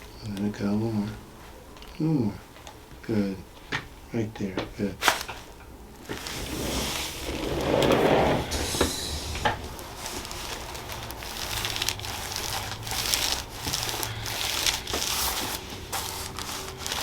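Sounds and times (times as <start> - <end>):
rustling and crinkling on table: 5.0 - 17.0.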